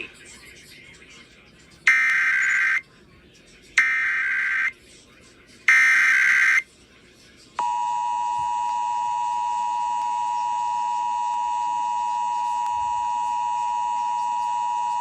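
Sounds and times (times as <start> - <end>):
steady two-tone alert signal: 1.9 - 2.8, 3.8 - 4.7, 5.7 - 6.6.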